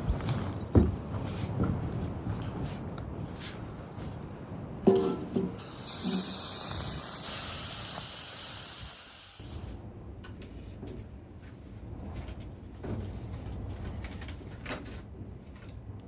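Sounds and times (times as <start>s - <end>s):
ringing knocks: 4.9s - 5.6s
loud hiss: 5.5s - 9.8s.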